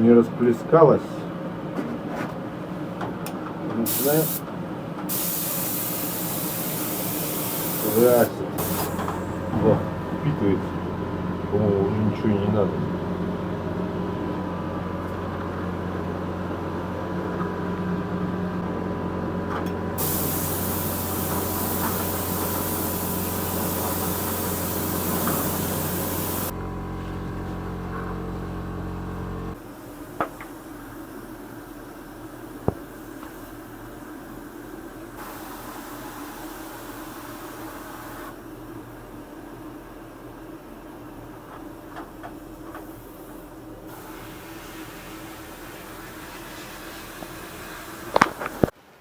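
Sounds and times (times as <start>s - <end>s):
paint spraying hiss: 3.9s - 4.4s, 5.1s - 9.5s, 20.0s - 26.5s
paint sprayer motor hum: 5.1s - 9.6s, 20.0s - 29.6s.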